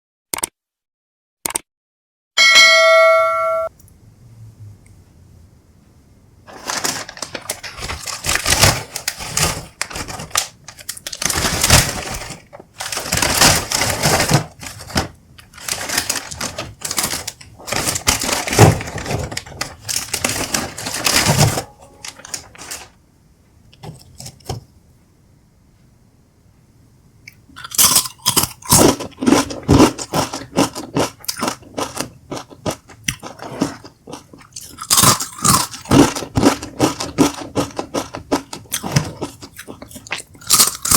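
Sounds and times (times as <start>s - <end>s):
crunching and chewing chips: 6.5s - 22.9s, 27.3s - 40.9s.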